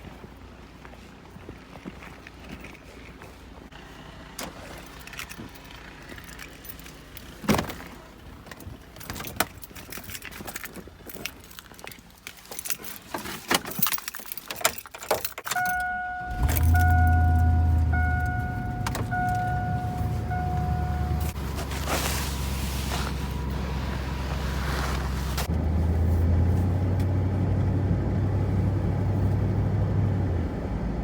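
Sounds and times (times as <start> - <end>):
keys jangling: 4.6 - 7.4, 8.5 - 21.4
vehicle warning chime beeping: 15.5 - 25.2
truck engine running: 15.7 - 31.0.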